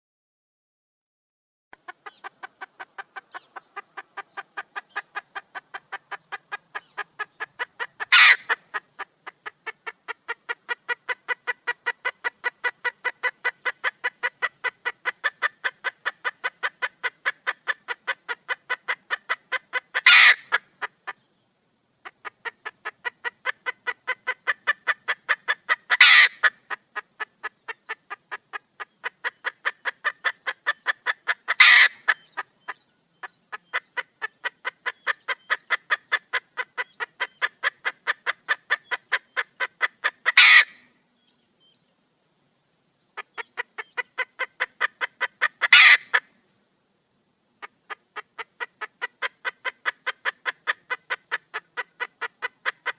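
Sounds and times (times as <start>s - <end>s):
hen clucking: 1.7s - 21.2s, 22.0s - 40.9s, 43.1s - 46.4s, 47.6s - 52.9s
hen harsh squawk: 8.1s - 8.6s.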